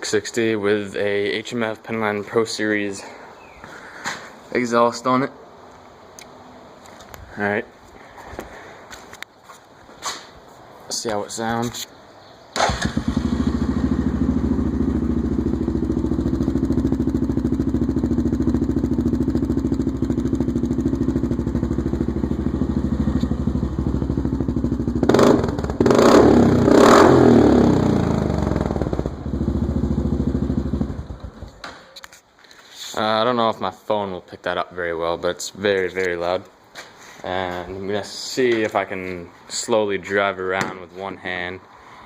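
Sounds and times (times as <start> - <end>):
atv engine idling and revving: 13.0 - 31.6.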